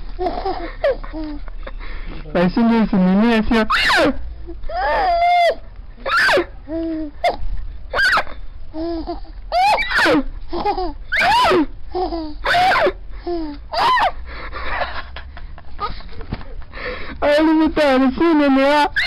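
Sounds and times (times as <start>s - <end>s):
baby laughing: 0.2s - 1.6s, 8.0s - 14.2s.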